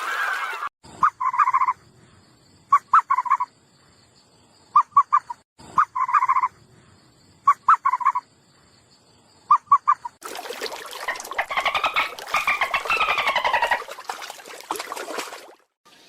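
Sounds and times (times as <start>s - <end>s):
animal calling with trills: 4.8s - 6.5s, 11.4s - 13.8s.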